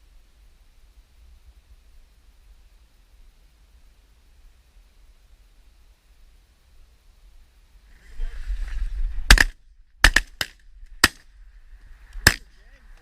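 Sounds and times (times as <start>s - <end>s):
shotgun shots: 9.3s - 11.3s, 12.2s - 12.5s.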